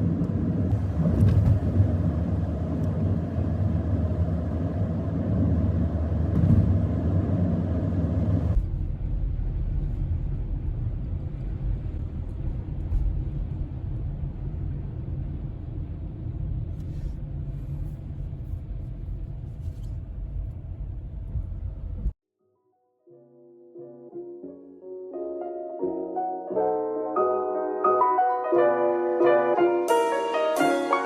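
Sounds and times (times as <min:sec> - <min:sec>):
strong wind buffeting microphone: 0:00.0 - 0:22.1.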